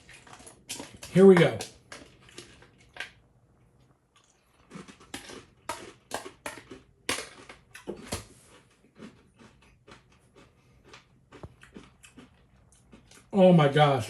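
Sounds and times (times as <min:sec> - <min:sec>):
person chewing crunchy cereal: 0:00.0 - 0:13.8.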